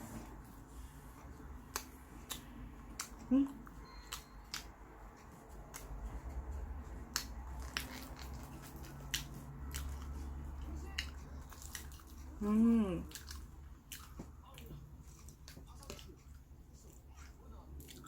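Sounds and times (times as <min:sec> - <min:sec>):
person chewing: 0:00.2 - 0:18.0
person humming: 0:03.2 - 0:03.6, 0:12.4 - 0:13.0.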